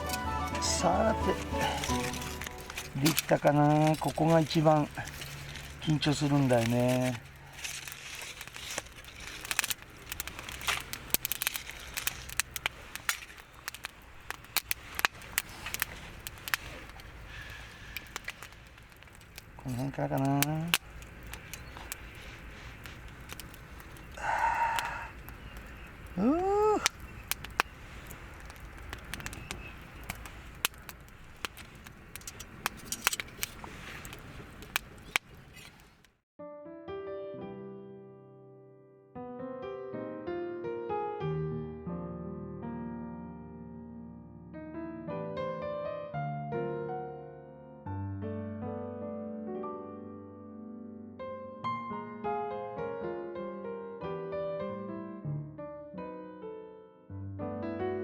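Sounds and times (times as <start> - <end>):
piano music: 0.0 - 7.3, 36.4 - 58.0
campfire crackling and popping: 0.0 - 36.2.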